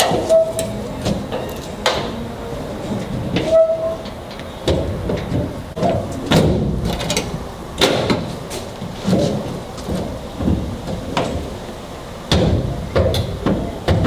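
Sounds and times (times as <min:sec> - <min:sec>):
tailgate hinge squeak: 0:00.0 - 0:02.2, 0:03.4 - 0:04.8.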